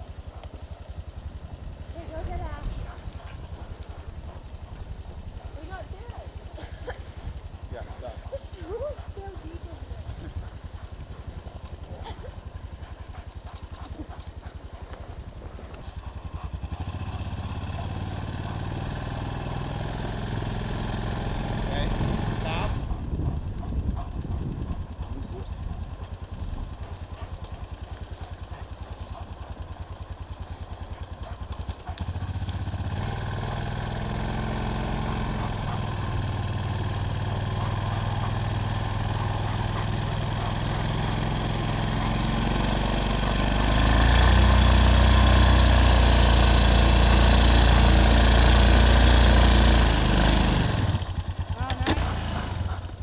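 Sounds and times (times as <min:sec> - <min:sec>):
small engine putter and revving: 0:00.0 - 0:53.0.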